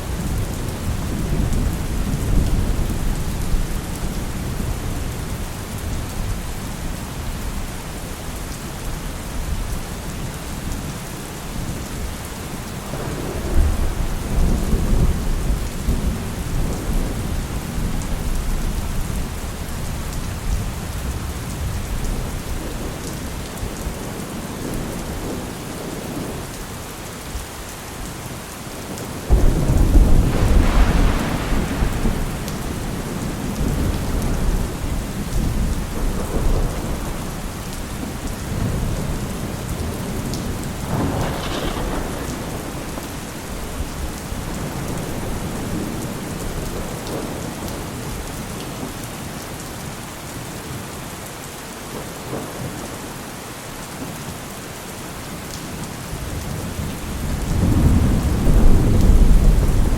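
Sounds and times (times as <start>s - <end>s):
heavy rain: 0.0s - 59.9s
thunder rumbling: 12.8s - 26.4s, 28.9s - 48.2s, 56.3s - 59.9s.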